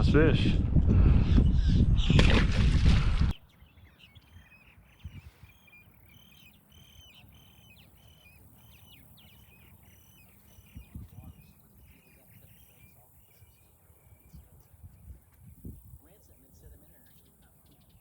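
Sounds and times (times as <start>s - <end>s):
wind buffeting microphone: 0.0s - 6.0s, 9.1s - 16.9s
birds chirping: 0.0s - 18.0s.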